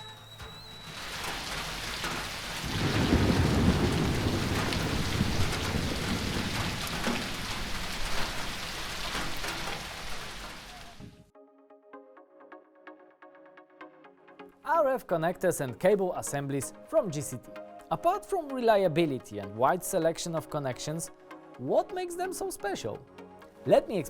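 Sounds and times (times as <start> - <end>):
heavy rain: 0.5 - 11.2
thunder rumbling: 1.0 - 11.2.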